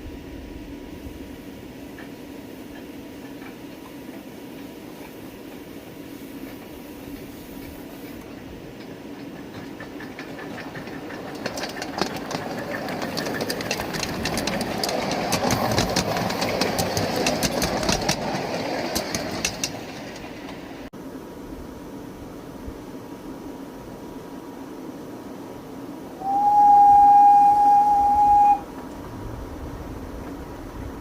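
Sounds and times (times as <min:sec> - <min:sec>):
steam locomotive train running past: 0:00.0 - 0:20.9, 0:24.3 - 0:31.0
wheels clicking on track: 0:01.9 - 0:05.8, 0:06.4 - 0:20.9.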